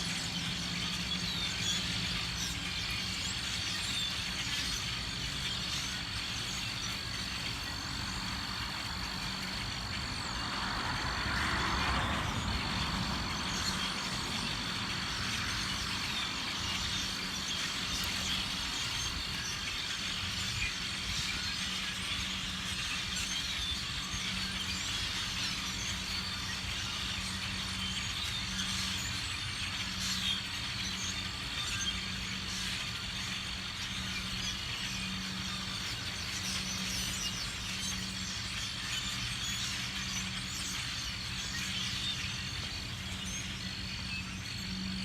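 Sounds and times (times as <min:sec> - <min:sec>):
flock of birds chattering: 0:00.0 - 0:45.0
traffic rumble: 0:07.8 - 0:17.2
vehicle passing: 0:09.4 - 0:15.7.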